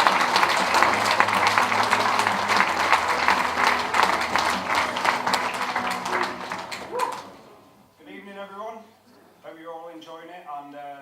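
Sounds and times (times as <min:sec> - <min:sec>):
audience applauding: 0:00.0 - 0:07.7.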